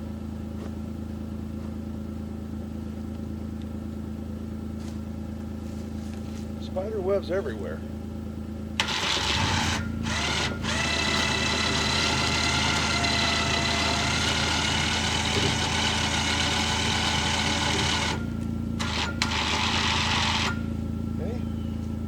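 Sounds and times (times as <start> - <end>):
utility vehicle engine running: 0.0 - 22.0
mechanical whine: 8.7 - 22.0.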